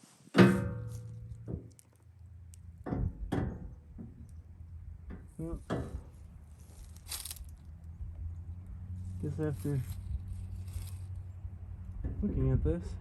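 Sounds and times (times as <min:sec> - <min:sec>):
brief rustle: 0:05.7 - 0:07.7, 0:09.6 - 0:11.2.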